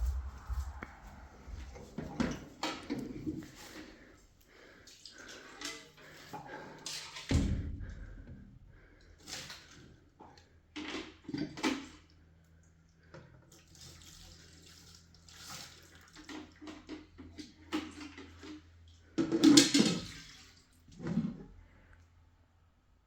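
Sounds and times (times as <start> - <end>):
heavy thump: 0.0 - 1.8
water splashing and pouring: 13.6 - 16.8, 19.6 - 20.9.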